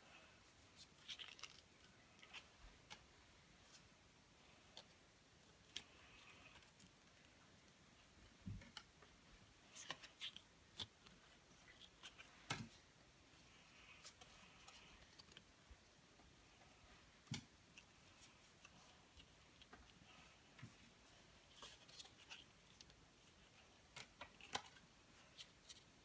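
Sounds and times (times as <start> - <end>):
trading cards and foil rustling: 0.8 - 2.5.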